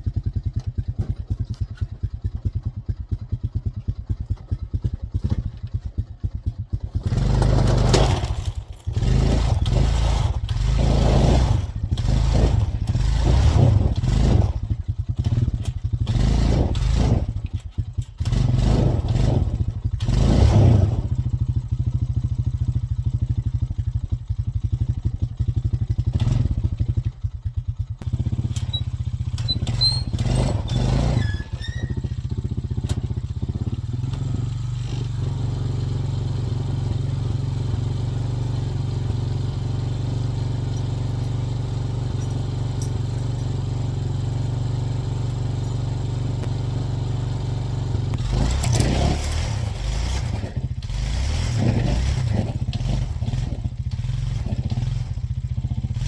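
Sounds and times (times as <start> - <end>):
engine revving: 6.9 - 22.3, 26.0 - 27.0, 28.0 - 56.0.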